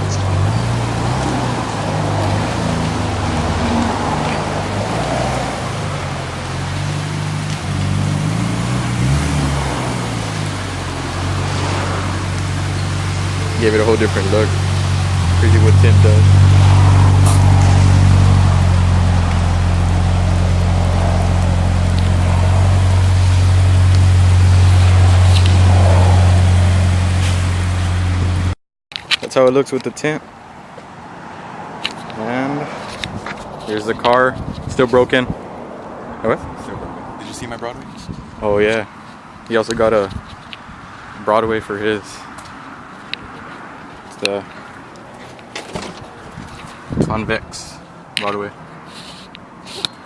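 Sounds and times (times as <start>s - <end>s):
car engine running at low revs: 0.0s - 28.6s.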